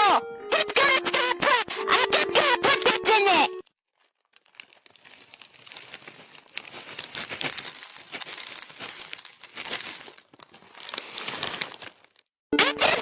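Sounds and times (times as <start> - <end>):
dense rattling and crinkling: 3.9 - 12.2.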